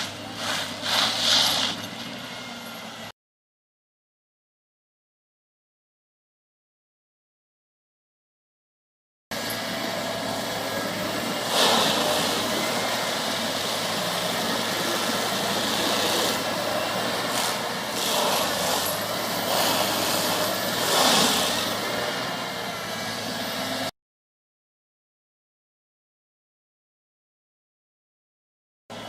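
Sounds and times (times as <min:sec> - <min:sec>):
forestry mulcher running: 0:00.0 - 0:03.1, 0:09.3 - 0:23.9
mulcher grinding stump: 0:00.0 - 0:03.1, 0:09.3 - 0:23.9.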